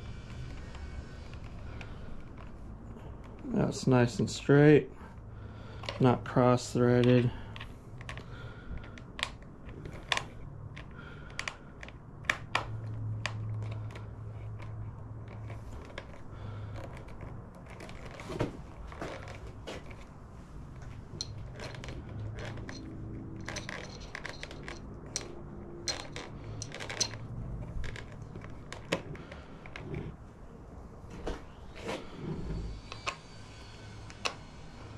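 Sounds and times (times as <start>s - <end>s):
metallic clicks of hand tools: 21.2s - 27.3s.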